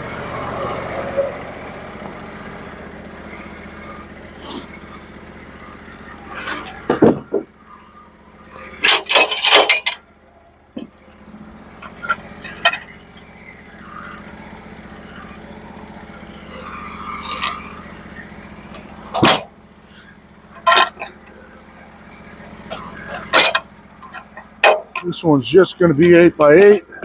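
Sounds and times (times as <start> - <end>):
sawmill engine running: 0.0 - 27.0
sharp knocks and clanks: 6.7 - 7.6, 8.8 - 10.1, 10.8 - 11.0, 18.7 - 19.6, 20.6 - 21.2, 22.6 - 25.2.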